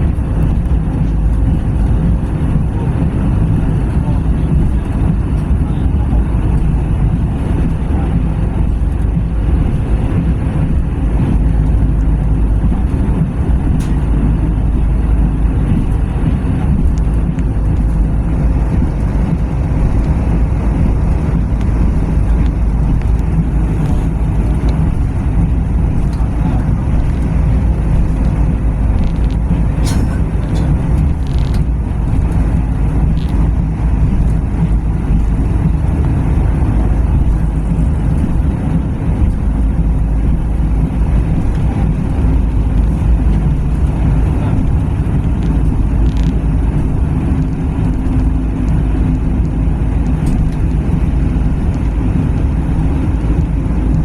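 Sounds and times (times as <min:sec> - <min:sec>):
train low rumble: 0:00.0 - 0:54.0
light clicks and rattles: 0:21.4 - 0:36.2.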